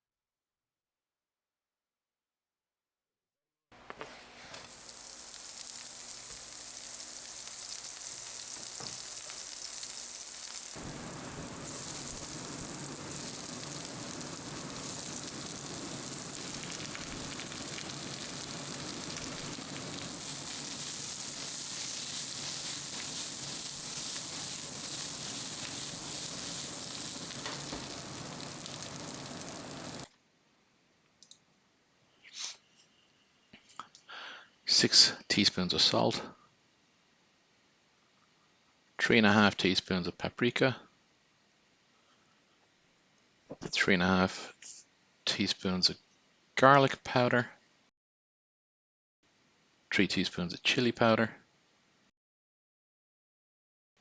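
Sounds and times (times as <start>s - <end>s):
food sizzling in hot oil: 4.2s - 30.1s.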